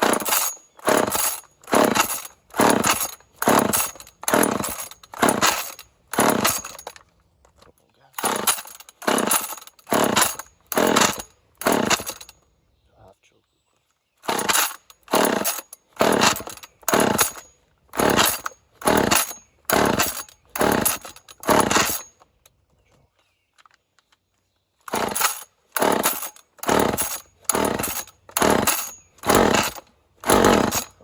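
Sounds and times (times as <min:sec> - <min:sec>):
chainsaw recoil starter pulls: 0:00.0 - 0:07.1, 0:08.2 - 0:12.4, 0:14.2 - 0:22.2, 0:24.8 - 0:31.0.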